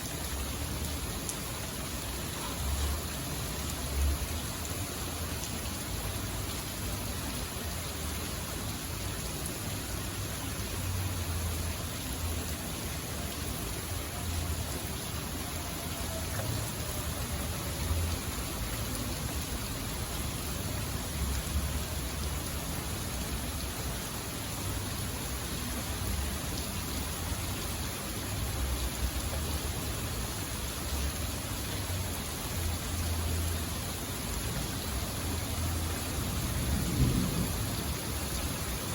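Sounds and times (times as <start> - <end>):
steady rain falling: 0.0 - 38.9
low thunder rumbles: 36.1 - 38.7.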